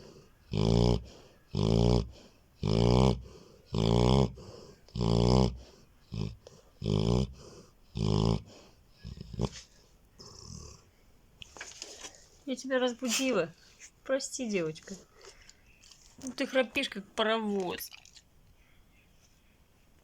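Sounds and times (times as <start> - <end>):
dog snoring loudly: 0.0 - 10.9.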